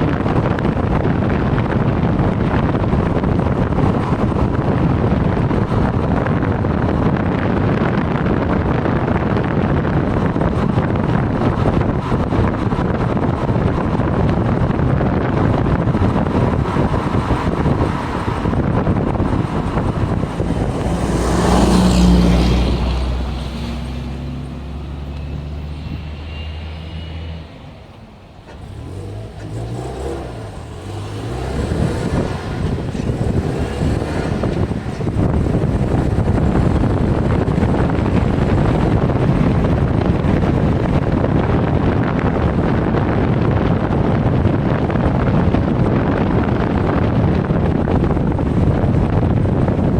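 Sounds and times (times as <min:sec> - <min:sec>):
car engine running: 0:00.0 - 0:26.4, 0:27.8 - 0:49.9
road and wind noise: 0:00.0 - 0:49.9
faint high brake squeal: 0:25.0 - 0:28.1.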